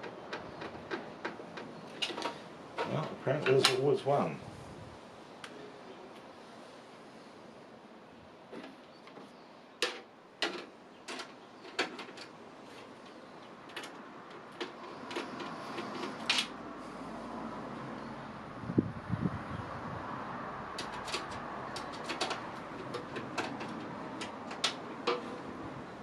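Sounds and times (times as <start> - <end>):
computer parts and screws clicking: 20.8 - 25.3.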